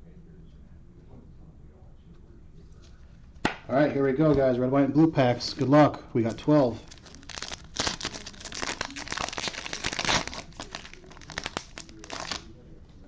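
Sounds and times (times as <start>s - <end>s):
cellophane wrapper crinkling and tearing: 6.5s - 12.5s.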